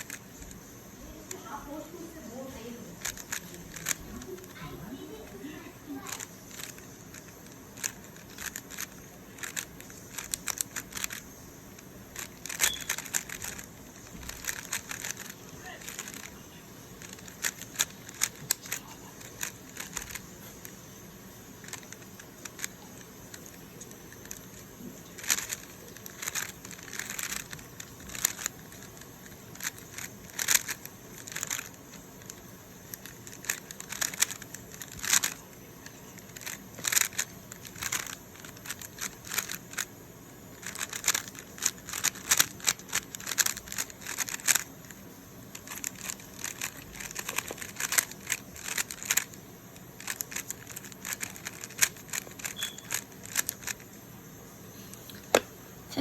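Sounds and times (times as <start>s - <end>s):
plastic puzzle cube clicking: 0.0s - 5.4s, 6.0s - 16.4s, 17.0s - 20.8s, 21.6s - 39.9s, 40.5s - 53.8s.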